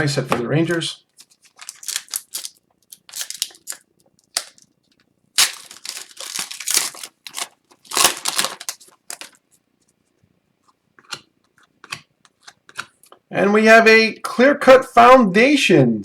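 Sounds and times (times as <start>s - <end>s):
cards and wrappers rustling: 0.7s - 9.6s.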